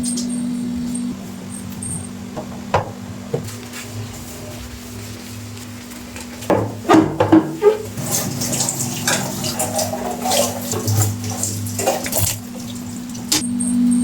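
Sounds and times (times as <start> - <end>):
steady low hum: 0.0 - 8.0, 9.2 - 14.0
tap water running into sink: 6.5 - 13.4.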